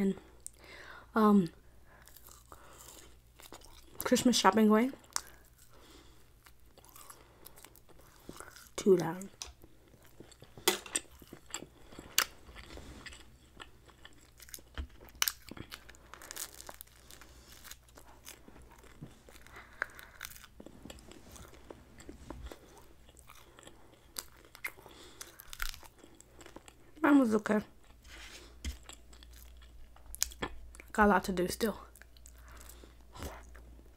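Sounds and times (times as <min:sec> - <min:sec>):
close chewing with wet mouth clicks: 0:02.0 - 0:04.1, 0:05.0 - 0:27.0.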